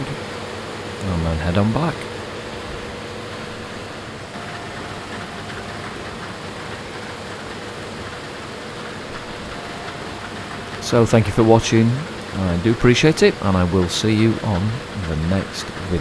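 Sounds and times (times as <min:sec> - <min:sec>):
combine harvester hum: 0:00.0 - 0:16.0.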